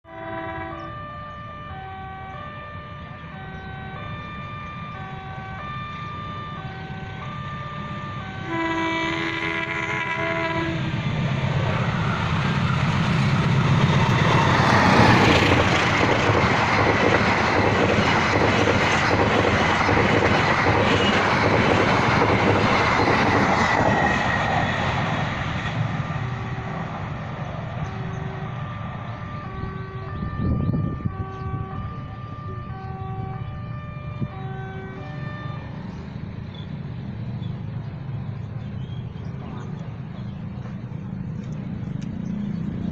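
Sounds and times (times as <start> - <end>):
train horn: 0.0 - 11.1, 27.8 - 36.0
train passing on rails: 0.1 - 42.9
level-crossing warning bell: 0.9 - 8.6.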